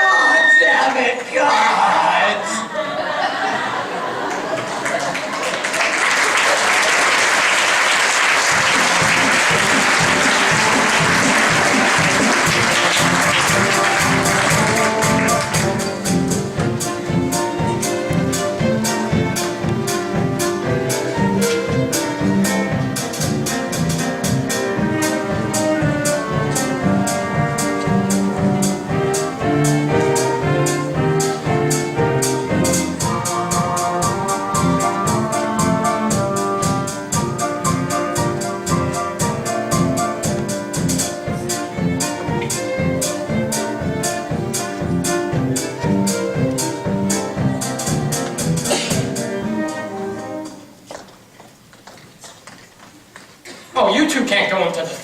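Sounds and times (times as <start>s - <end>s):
audience applauding: 3.7s - 16.0s, 50.9s - 53.4s
band music with bass line: 8.5s - 50.8s.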